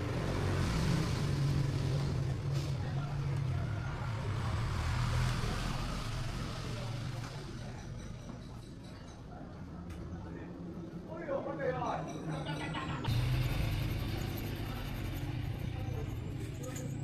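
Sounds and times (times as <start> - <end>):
engine humming steadily: 0.0 - 8.6, 13.0 - 17.0.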